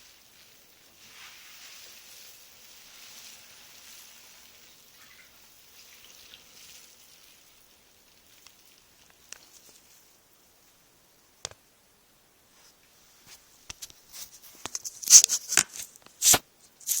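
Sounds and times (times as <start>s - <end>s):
bath water sloshing and dripping: 0.3s - 10.0s.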